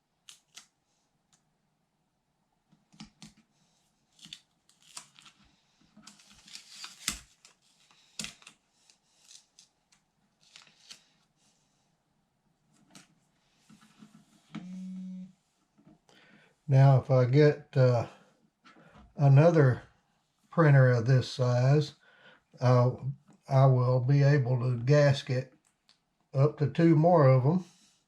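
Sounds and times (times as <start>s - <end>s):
rustling of hands handling rubber: 2.6s - 16.6s.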